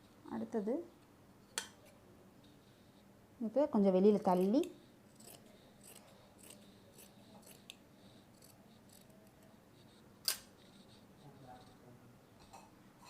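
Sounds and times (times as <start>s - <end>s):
scissors snipping fabric: 4.3s - 7.8s.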